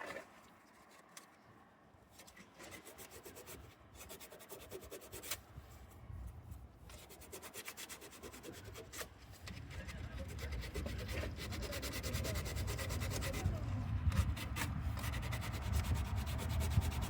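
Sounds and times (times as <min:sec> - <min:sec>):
sandpaper rubbing on metal: 0:02.7 - 0:05.4, 0:07.0 - 0:17.0.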